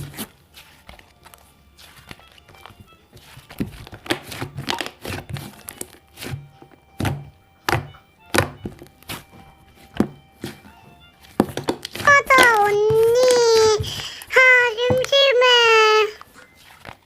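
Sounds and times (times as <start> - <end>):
faint background music: 0.0 - 17.0
sharp taps and thunks: 3.4 - 15.4.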